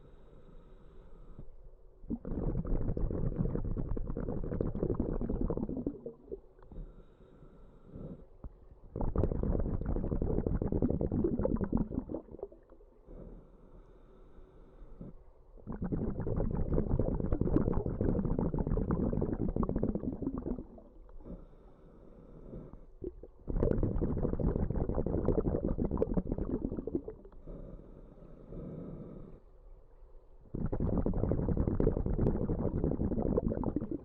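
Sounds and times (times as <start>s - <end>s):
bubbles gurgling: 2.1s - 6.5s, 9.0s - 12.8s, 15.6s - 21.0s, 23.0s - 27.4s, 30.6s - 34.0s
regulator breathing underwater: 2.1s - 29.5s.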